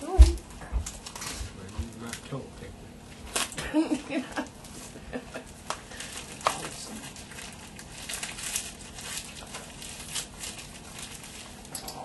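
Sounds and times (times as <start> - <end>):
gift wrap rustling and crinkling: 0.2 - 2.4, 4.6 - 11.7.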